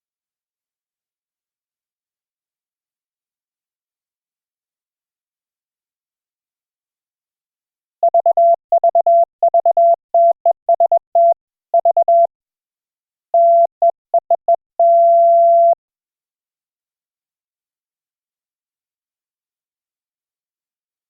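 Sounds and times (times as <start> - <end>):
morse code tone: 8.0 - 12.3, 13.4 - 15.8.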